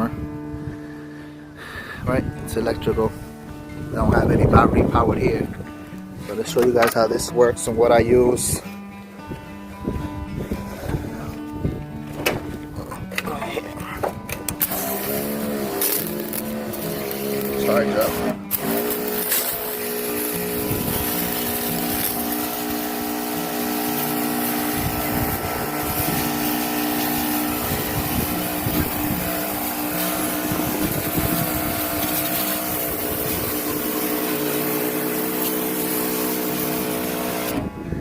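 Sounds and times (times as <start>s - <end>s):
electric water pump humming: 14.4s - 38.0s
water jet hissing: 14.6s - 37.6s.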